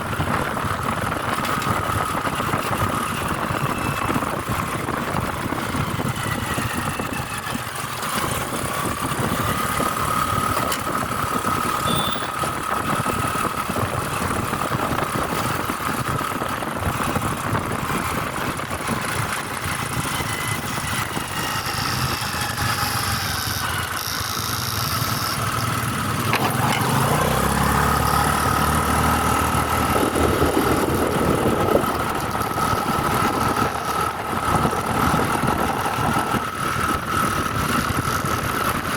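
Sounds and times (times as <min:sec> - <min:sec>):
vehicle engine and road noise: 0:00.0 - 0:38.9
deeper rumble: 0:25.7 - 0:38.9.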